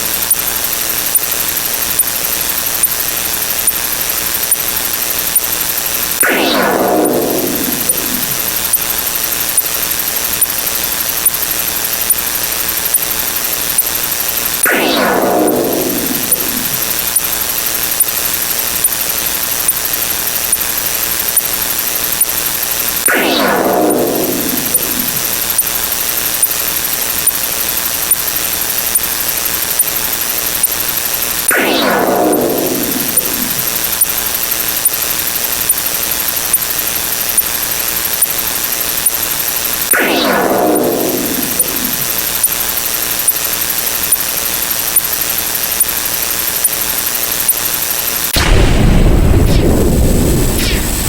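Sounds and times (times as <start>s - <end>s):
static hiss: 24.2s - 51.0s
loud static hiss: 41.1s - 51.0s.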